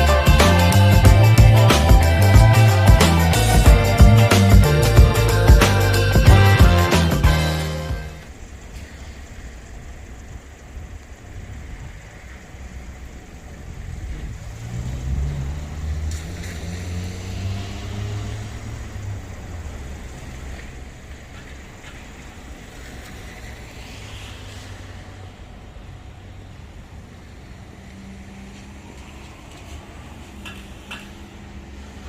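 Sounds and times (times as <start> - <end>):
road vehicle rumbling: 0.0 - 32.0.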